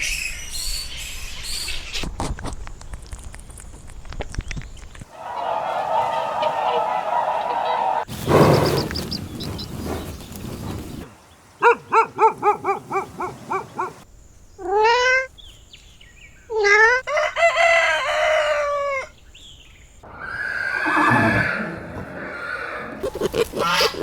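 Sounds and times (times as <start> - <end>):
rooster crowing: 5.1 - 8.1, 17.1 - 19.1
chickens clucking: 5.2 - 11.1.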